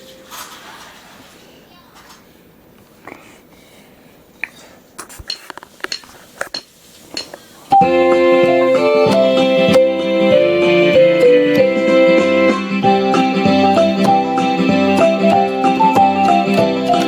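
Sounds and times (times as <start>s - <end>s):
electronic keyboard music: 7.7s - 17.0s.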